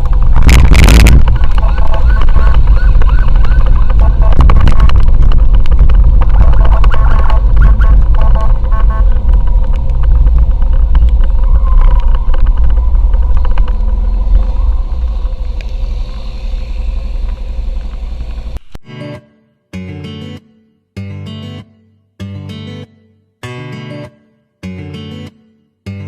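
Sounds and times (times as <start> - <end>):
motorcycle engine: 0.0 - 18.7
wind and road noise: 0.0 - 18.8.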